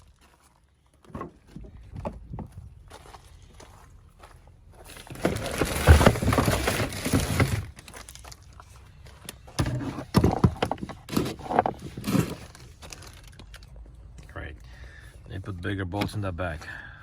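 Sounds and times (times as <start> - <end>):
tools and parts clattering: 4.8 - 14.3.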